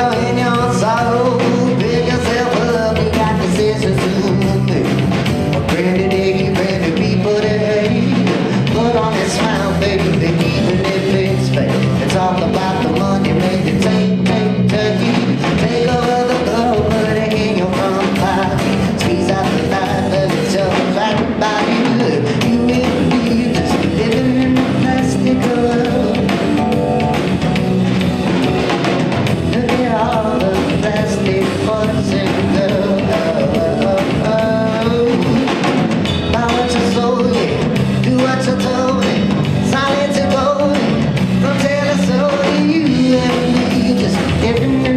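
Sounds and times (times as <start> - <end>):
person singing: 0.0 - 27.6, 29.2 - 44.9
drum kit: 0.0 - 44.9
guitar: 0.0 - 44.9.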